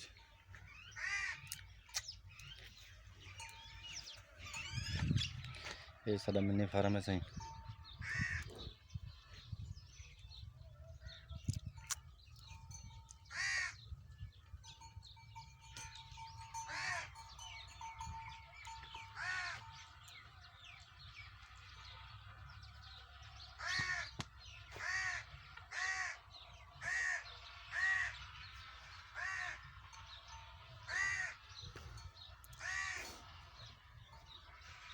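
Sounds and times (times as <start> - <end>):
crows cawing: 0.8 - 1.6, 8.0 - 8.6, 13.3 - 13.8, 16.5 - 17.2, 18.9 - 19.8, 23.6 - 26.2, 26.8 - 28.2, 29.0 - 29.8, 30.8 - 31.6, 32.5 - 33.3.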